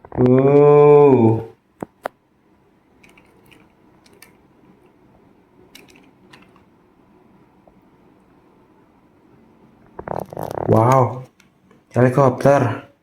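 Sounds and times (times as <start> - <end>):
plastic toys clicking and rustling: 3.0 - 4.4, 5.7 - 6.7.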